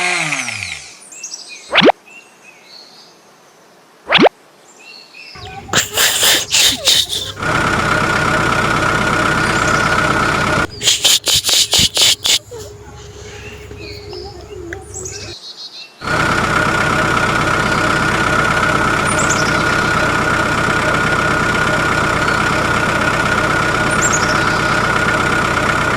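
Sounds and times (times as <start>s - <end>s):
birds chirping: 5.4s - 15.4s, 17.4s - 25.2s
small tractor engine running: 5.4s - 15.4s, 16.0s - 25.9s.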